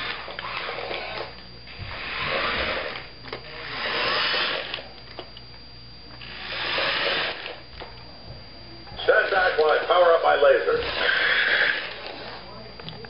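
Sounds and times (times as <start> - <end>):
toy electric motor whirring: 0.0 - 5.0, 6.2 - 7.6, 9.1 - 12.5.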